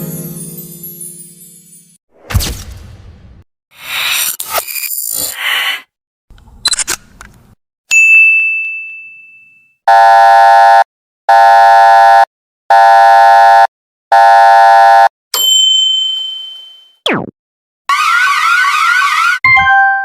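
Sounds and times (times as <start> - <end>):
bright ding: 7.9 - 9.8
harsh alarm buzzer blasts: 9.9 - 15.1.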